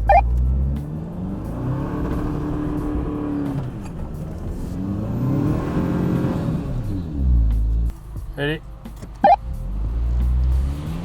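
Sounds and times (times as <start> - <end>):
truck engine revving under load: 0.0 - 7.9, 9.2 - 11.0.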